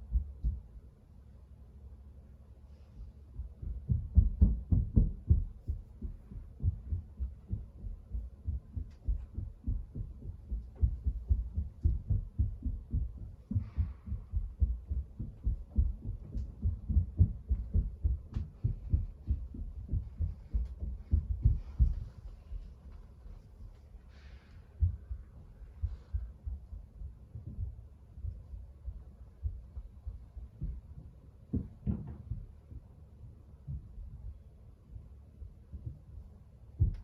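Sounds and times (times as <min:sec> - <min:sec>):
muffled footstep thuds through ceiling: 0:03.4 - 0:23.1, 0:29.4 - 0:32.9.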